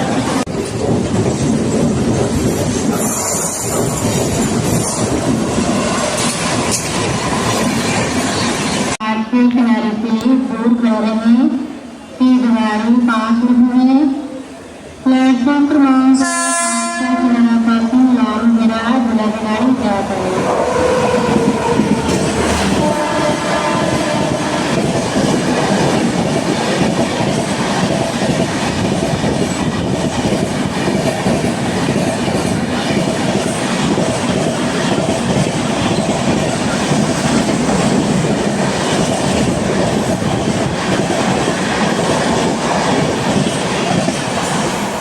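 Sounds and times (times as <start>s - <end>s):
train wheels clattering over rails: 0.4s - 9.0s, 20.0s - 45.0s.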